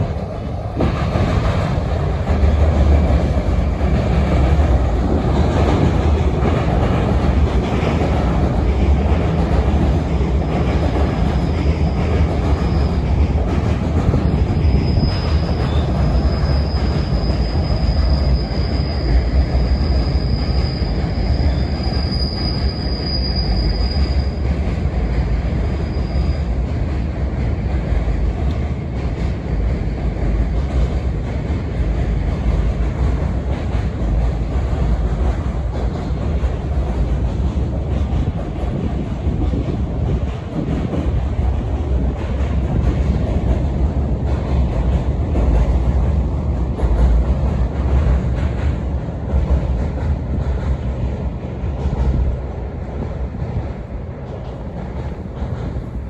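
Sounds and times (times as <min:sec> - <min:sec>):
train wheels rumbling on rail: 0:00.0 - 0:56.0
high thin wheel squeal: 0:14.1 - 0:24.5, 0:25.7 - 0:26.6.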